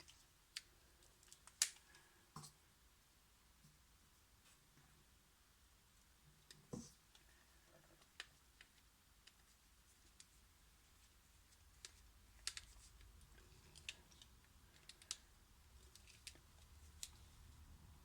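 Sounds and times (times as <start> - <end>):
small parts clicking and tapping: 0.0 - 2.0, 6.4 - 9.5, 11.7 - 17.2.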